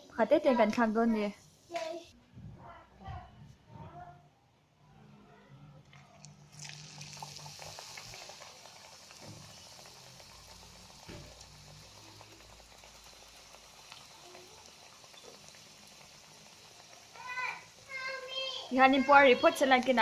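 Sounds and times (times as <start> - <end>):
dough frying in oil: 5.8 - 20.0.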